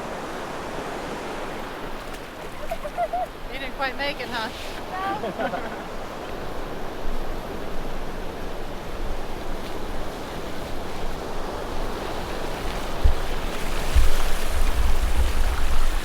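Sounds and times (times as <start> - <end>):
ocean surf washing onto beach: 0.0 - 16.0
wind buffeting microphone: 6.1 - 16.0.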